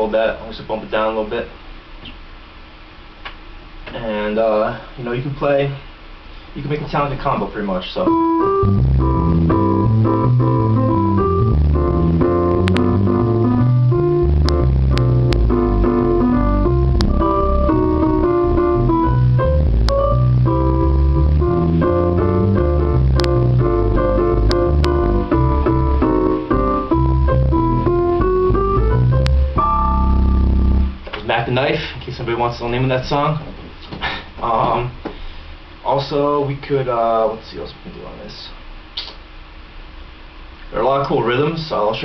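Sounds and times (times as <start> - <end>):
bass line on digital piano: 6.6 - 35.0
piano chords and melody: 8.0 - 31.1.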